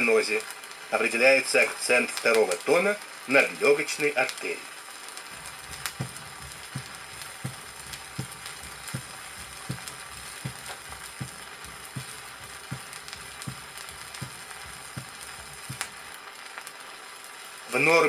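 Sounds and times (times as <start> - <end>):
vinyl surface hiss and crackle: 0.0 - 18.0
recorded heartbeat thumps: 5.3 - 16.2.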